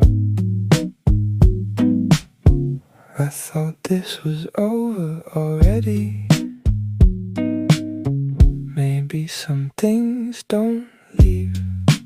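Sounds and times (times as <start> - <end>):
instrumental soul-jazz music: 0.0 - 2.8, 5.6 - 8.8, 11.2 - 12.0.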